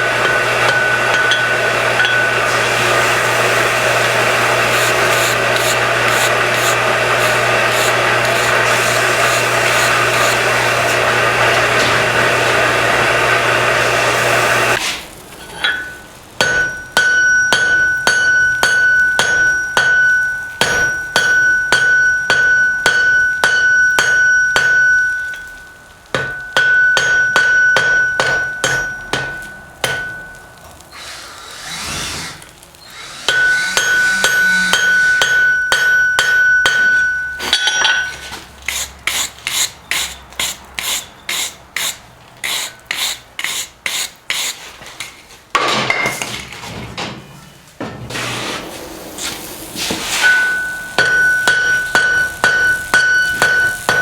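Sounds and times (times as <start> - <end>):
hammer striking metal on anvil: 0.0 - 2.8, 4.4 - 12.5, 15.6 - 30.6, 33.3 - 38.3, 50.2 - 54.0.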